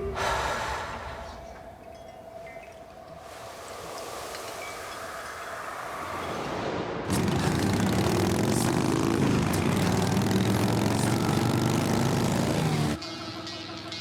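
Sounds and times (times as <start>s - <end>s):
engine droning: 3.3s - 13.0s.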